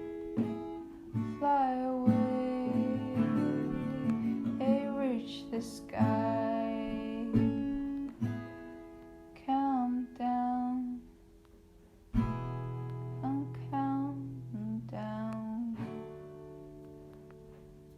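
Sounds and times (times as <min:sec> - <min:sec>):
acoustic guitar strumming: 0:00.0 - 0:17.9
person singing: 0:01.4 - 0:08.3, 0:13.2 - 0:15.9.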